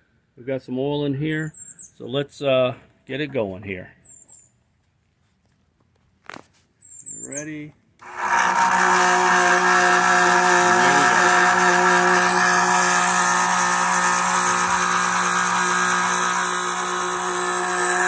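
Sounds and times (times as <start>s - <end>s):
electric pump motor humming: 8.0s - 18.0s.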